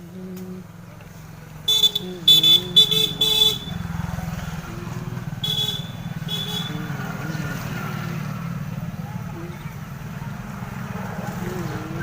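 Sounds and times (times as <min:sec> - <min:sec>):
engine running: 0:00.0 - 0:12.0
vehicle horn beeping: 0:01.7 - 0:03.9, 0:05.4 - 0:06.9.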